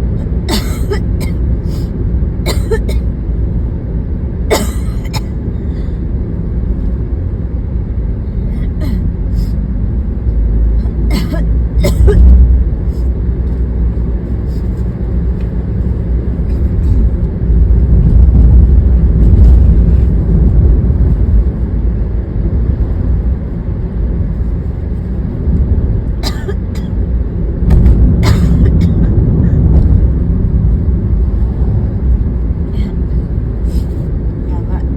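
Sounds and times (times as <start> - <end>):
car road and engine rumble: 0.0 - 34.9
woman coughing: 0.5 - 1.4, 2.5 - 3.0, 4.5 - 5.4, 8.6 - 9.1, 11.1 - 12.3, 26.2 - 26.9, 28.2 - 29.6.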